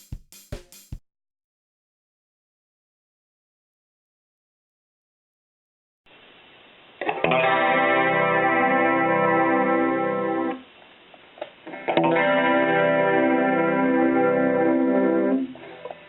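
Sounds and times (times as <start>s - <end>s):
clean electric guitar chord strummed: 7.2s - 10.6s, 11.8s - 15.8s.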